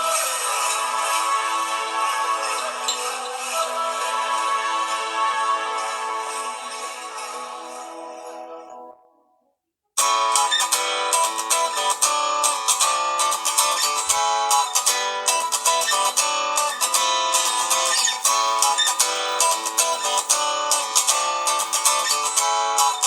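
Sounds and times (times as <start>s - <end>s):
plucked guitar-like ringtone melody: 10.0s - 23.0s
phone ringtone: 17.4s - 23.0s.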